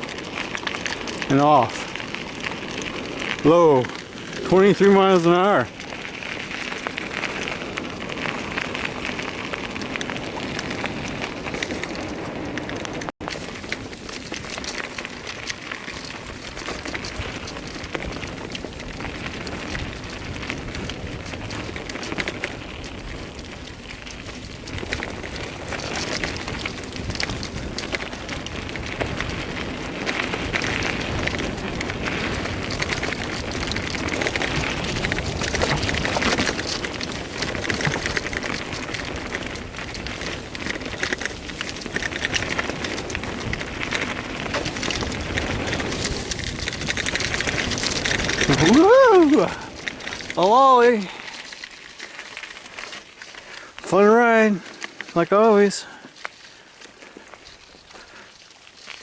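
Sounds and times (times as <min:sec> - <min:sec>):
bicycle tyres rattling on trail: 0:00.0 - 0:59.0
wind rushing over microphone: 0:16.2 - 0:51.4.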